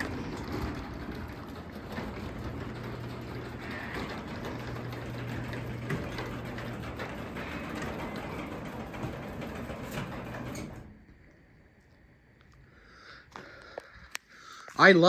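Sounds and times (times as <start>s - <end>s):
garage door opener humming: 0.0s - 11.7s.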